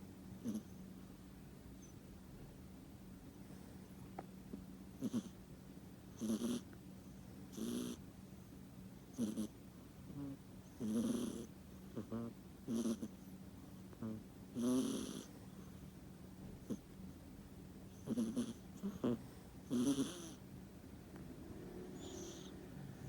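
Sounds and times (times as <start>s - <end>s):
cat snoring: 0.4s - 0.8s, 5.0s - 5.4s, 6.2s - 6.6s, 7.5s - 8.0s, 9.1s - 13.2s, 14.0s - 15.4s, 16.6s - 16.8s, 17.9s - 20.4s, 21.5s - 23.0s.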